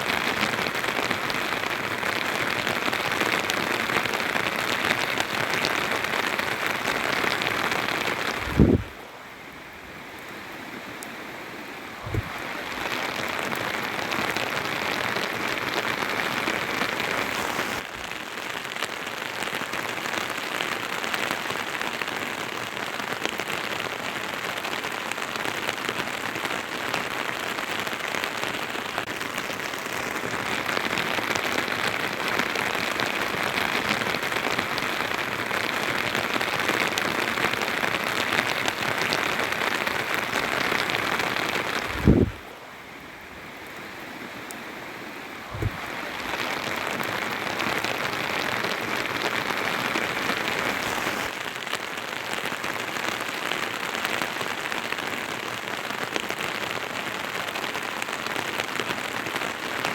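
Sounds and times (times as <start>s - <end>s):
steady rain falling: 0.0s - 59.9s
low thump: 45.6s - 45.8s.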